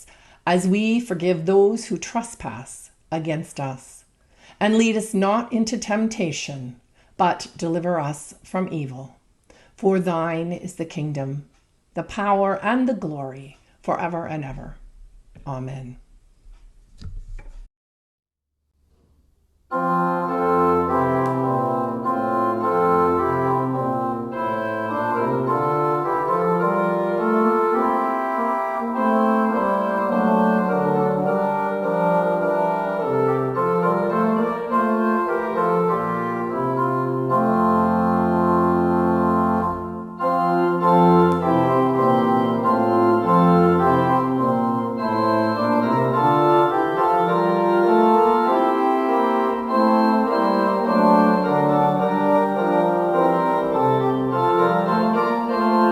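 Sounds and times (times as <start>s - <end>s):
organ music: 19.7s - 55.9s.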